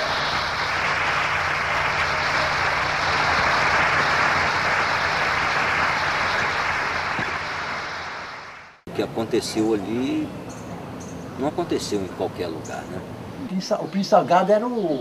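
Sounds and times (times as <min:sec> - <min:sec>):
crowd applauding: 0:00.0 - 0:08.8.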